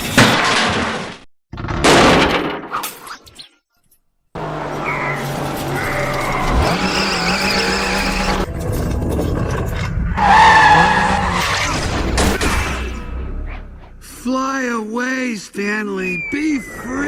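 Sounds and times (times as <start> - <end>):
cartoon car engine running: 4.4 - 8.5
tyres skidding: 4.4 - 9.4, 10.0 - 14.0.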